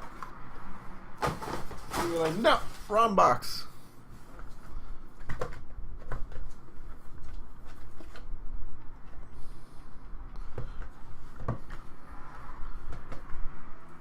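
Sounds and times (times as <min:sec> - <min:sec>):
rustling of cardboard and wrappers: 0:00.0 - 0:03.2, 0:04.1 - 0:10.1.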